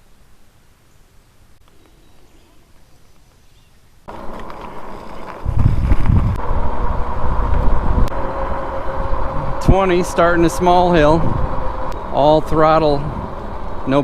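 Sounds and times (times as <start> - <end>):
electric motor whine: 4.1 - 14.0
wind buffeting microphone: 5.3 - 13.8.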